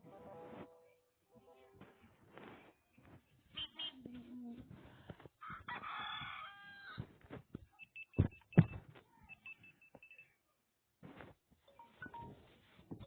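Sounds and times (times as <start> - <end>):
rooster crowing: 5.4 - 7.0.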